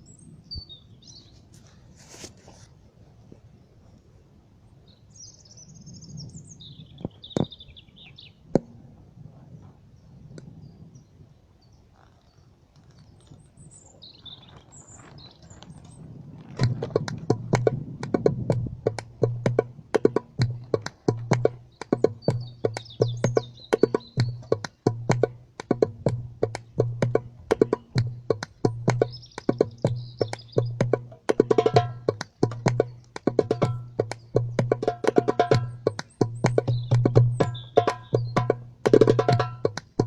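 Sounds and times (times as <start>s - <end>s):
birds chirping: 4.8s - 8.9s, 9.6s - 40.0s
drum beaten in quick rhythm: 16.6s - 40.0s
sharp taps: 16.6s - 40.0s.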